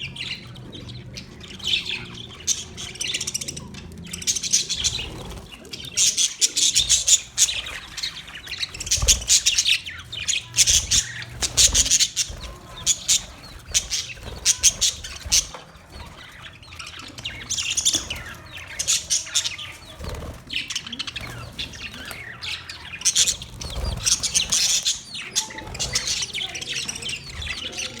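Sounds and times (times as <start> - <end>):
bird squawks: 0.0 - 28.0
budgerigars chirping: 0.0 - 28.0.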